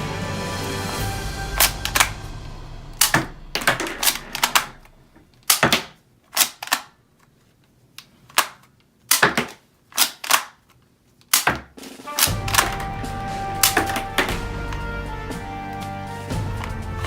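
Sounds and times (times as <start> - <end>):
toy guns clacking: 1.6 - 2.2, 3.0 - 7.0, 8.3 - 13.0, 13.6 - 14.4.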